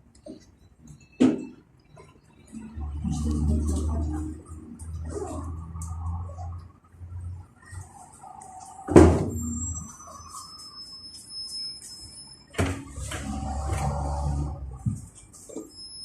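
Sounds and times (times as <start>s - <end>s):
thin high whining tones: 7.6s - 14.8s.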